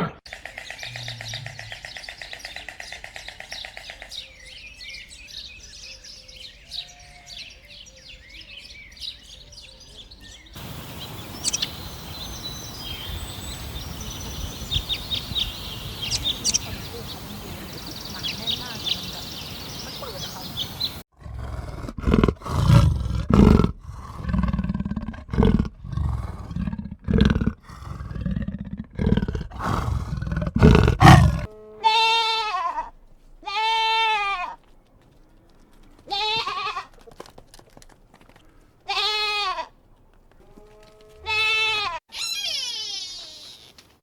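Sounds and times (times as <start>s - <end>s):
rough low animal calls: 0.0s - 3.8s, 10.6s - 21.0s, 24.2s - 32.2s, 40.4s - 43.8s
high-pitched animal cries: 31.0s - 32.9s, 41.2s - 43.8s.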